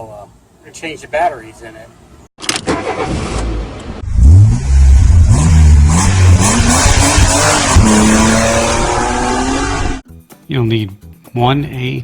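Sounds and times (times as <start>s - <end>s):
engine revving and accelerating: 3.4s - 10.0s.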